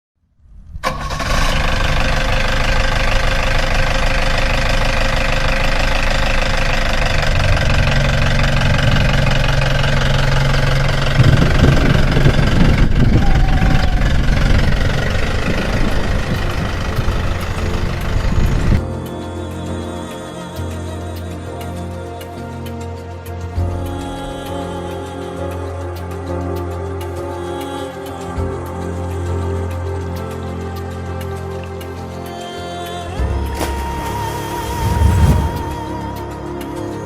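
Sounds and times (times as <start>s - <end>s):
low engine tone: 0.7s - 18.8s, 33.2s - 37.0s
vehicle engine running: 1.2s - 18.8s, 33.8s - 36.6s.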